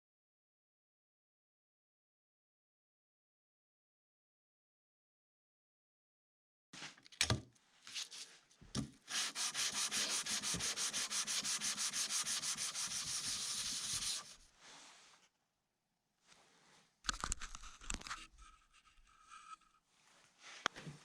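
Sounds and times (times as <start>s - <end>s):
hand sanding strokes: 9.1s - 14.4s.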